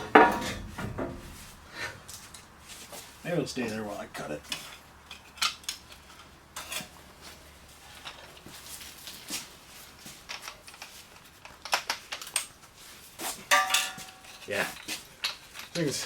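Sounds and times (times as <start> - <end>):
metal tools clinking: 10.1 - 12.6, 13.4 - 16.0.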